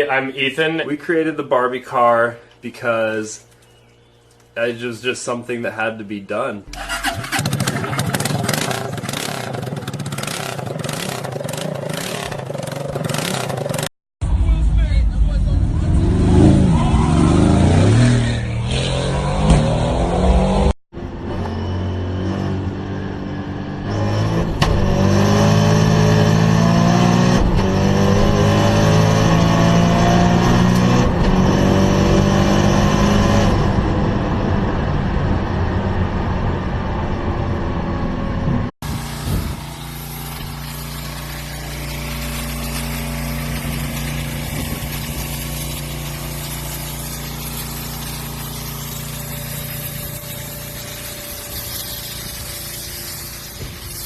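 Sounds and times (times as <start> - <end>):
low engine drone: 6.7 - 26.8, 33.1 - 54.0
car engine revving: 15.6 - 20.8, 23.8 - 38.7.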